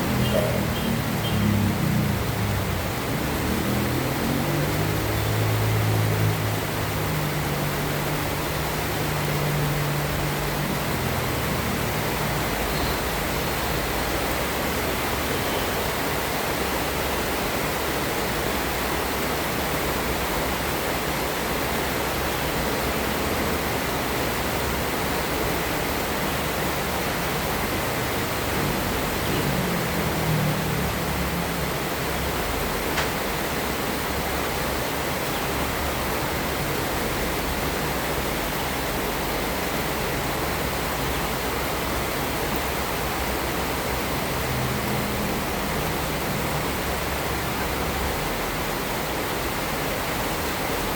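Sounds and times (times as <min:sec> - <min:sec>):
heavy rain falling: 0:00.0 - 0:50.9.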